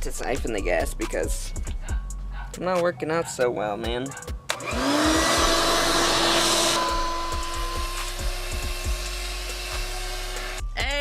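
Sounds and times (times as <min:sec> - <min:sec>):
vacuum cleaner motor running: 0:04.6 - 0:10.6.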